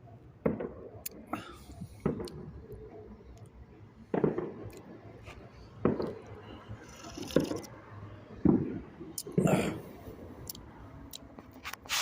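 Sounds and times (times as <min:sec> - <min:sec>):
distant gunshots with echo: 0:04.1 - 0:04.7.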